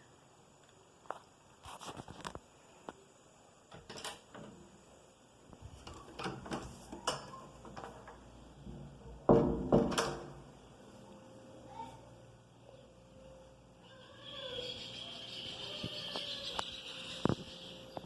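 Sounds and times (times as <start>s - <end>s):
refrigerator contents knocking: 9.3s - 10.2s.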